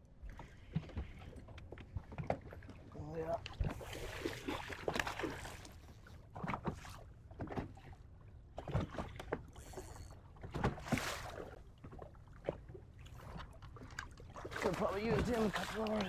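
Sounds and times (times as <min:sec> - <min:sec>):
water splashing around boat: 0:00.1 - 0:16.0
short splashes or knocks: 0:13.8 - 0:16.0.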